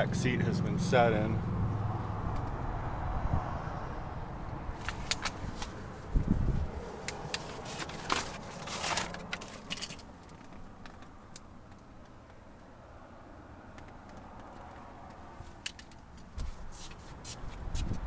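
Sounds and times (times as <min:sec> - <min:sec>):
light clicks and rustles: 0:04.8 - 0:06.1, 0:06.9 - 0:12.5, 0:13.7 - 0:18.0.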